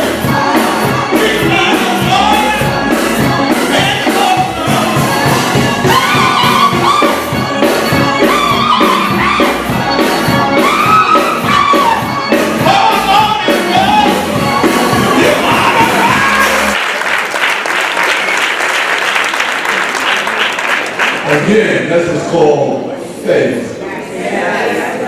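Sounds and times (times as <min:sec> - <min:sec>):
gospel choir singing over a beat: 0:00.0 - 0:16.8.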